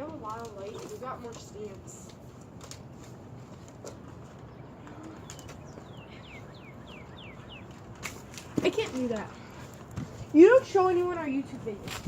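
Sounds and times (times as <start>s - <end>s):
faint outdoor background noise: 0.0s - 12.0s.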